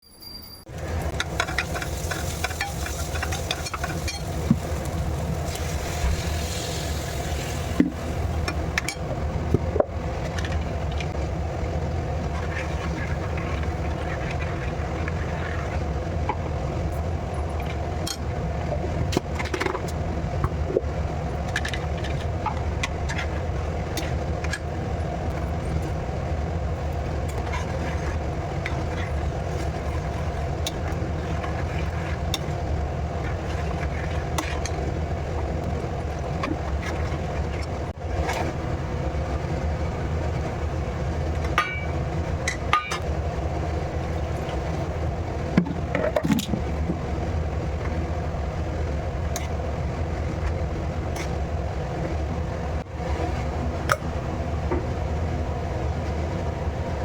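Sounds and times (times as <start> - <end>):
steady mechanical hum: 0.1 - 57.0.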